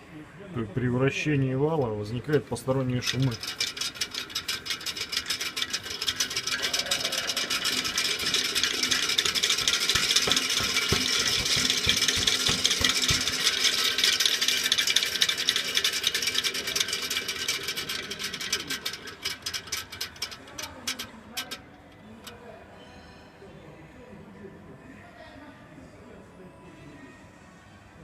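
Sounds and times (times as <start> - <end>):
fluid coupling rattling and clicking: 1.7 - 22.4.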